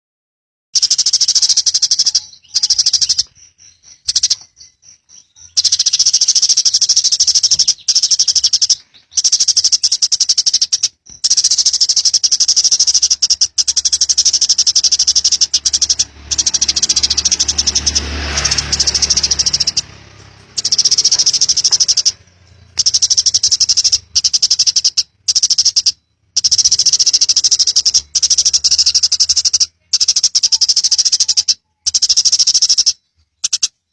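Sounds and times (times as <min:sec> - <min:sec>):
sparrow chattering: 0:00.8 - 0:33.9.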